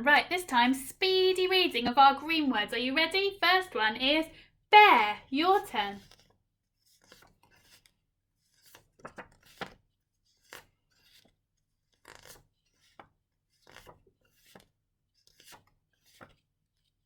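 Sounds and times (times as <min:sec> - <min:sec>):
paper cards rustling and tapping: 0:06.0 - 0:17.0.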